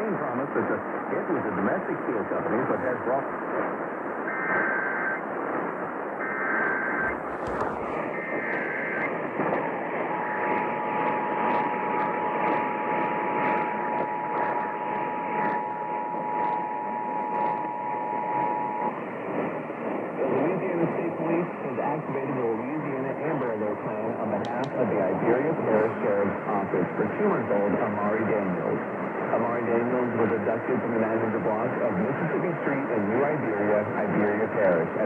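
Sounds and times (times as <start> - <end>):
radio hiss and crackle: 0.0 - 35.0
two-tone attention signal: 4.3 - 5.2, 6.2 - 9.0.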